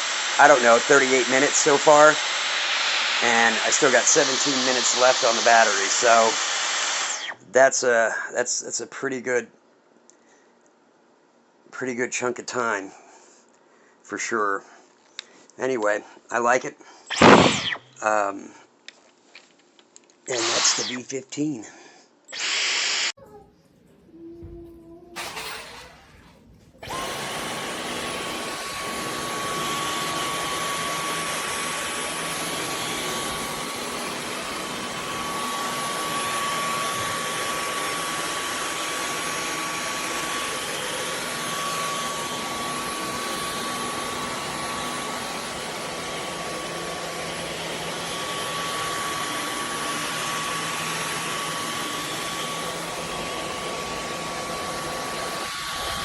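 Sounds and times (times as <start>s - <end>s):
vacuum cleaner running: 0.0s - 7.4s, 20.3s - 21.0s, 22.3s - 23.3s, 25.2s - 56.0s.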